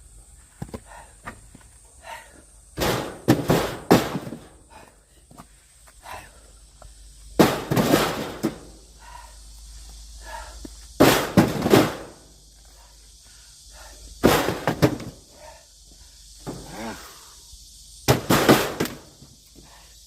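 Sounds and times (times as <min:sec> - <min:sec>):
axe splitting firewood: 0:02.8 - 0:04.5, 0:07.4 - 0:08.7, 0:11.0 - 0:12.2, 0:14.2 - 0:15.2, 0:18.1 - 0:19.1.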